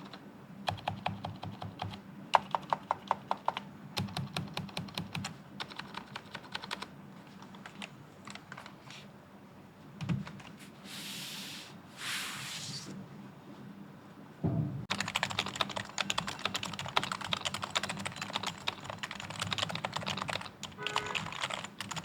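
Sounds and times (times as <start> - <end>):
keyboard typing: 0.0 - 8.9, 14.9 - 22.0
short hissing noises: 10.6 - 13.0
low thump: 14.4 - 14.9.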